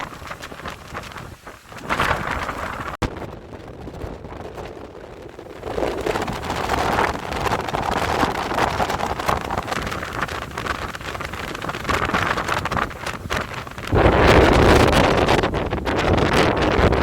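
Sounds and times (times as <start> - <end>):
gusty wind buffeting microphone: 0.0 - 17.0.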